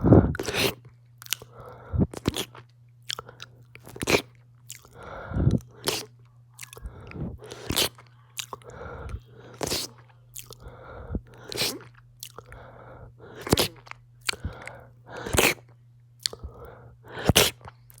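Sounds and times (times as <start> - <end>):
heavy breathing: 0.0 - 0.4, 1.5 - 2.1, 4.9 - 6.0, 6.7 - 7.8, 8.5 - 11.8, 12.4 - 15.5, 16.4 - 17.5
steady low hum: 0.0 - 18.0
chewing gummy candy: 0.3 - 18.0
wet sticky mouth clicks: 13.4 - 15.6, 16.2 - 16.6.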